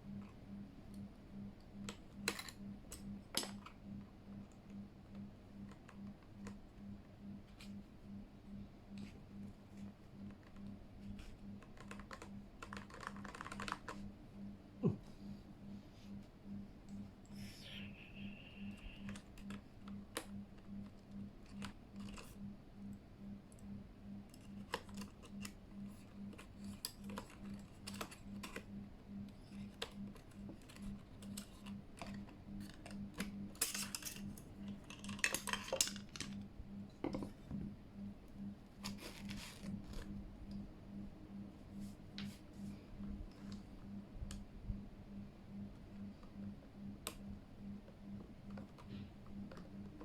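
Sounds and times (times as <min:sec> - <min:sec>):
plastic parts clicking and clattering: 0:30.6 - 0:36.4.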